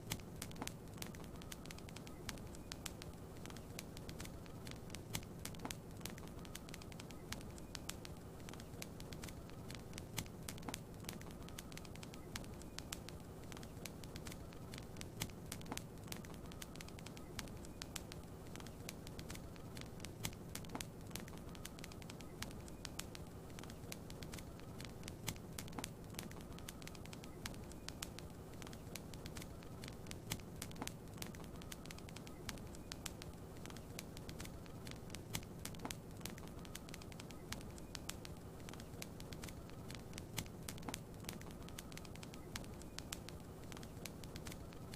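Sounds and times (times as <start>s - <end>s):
soft fire hiss: 0.0s - 44.9s
wood fire crackling: 0.0s - 44.9s.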